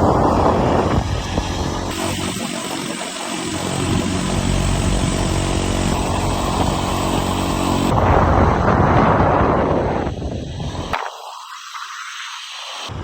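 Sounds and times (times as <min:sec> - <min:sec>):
motorcycle engine running: 0:00.0 - 0:10.1
road noise: 0:00.0 - 0:11.0.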